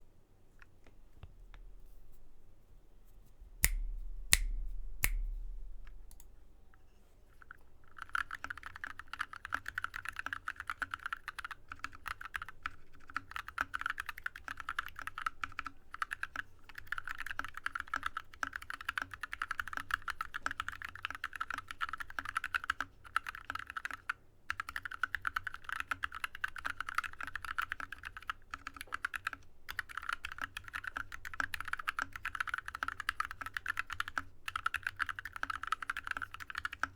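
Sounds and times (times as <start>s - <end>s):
mechanical keyboard typing: 7.9s - 36.9s.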